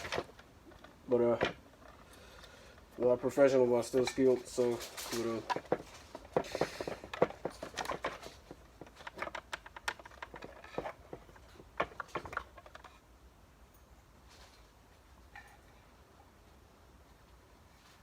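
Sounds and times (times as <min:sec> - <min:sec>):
small parts and tools clattering: 0:00.0 - 0:13.1.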